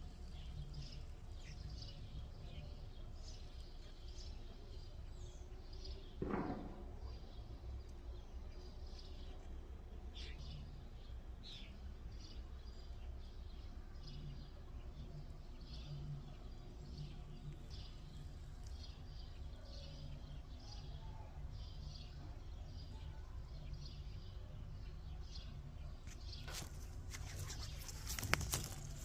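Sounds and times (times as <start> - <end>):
small bird chirping: 0.0 - 6.2, 7.0 - 29.0
low background rumble: 6.8 - 29.0.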